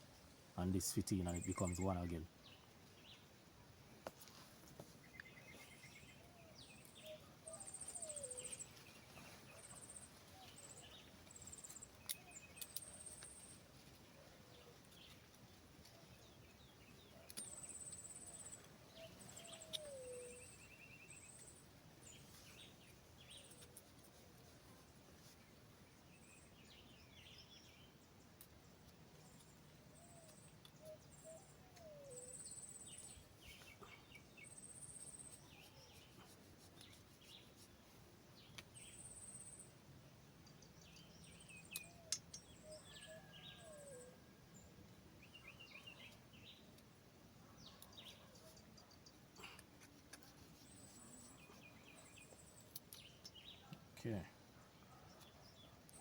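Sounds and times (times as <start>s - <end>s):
low falling whistled bird call: 41.6s - 44.2s.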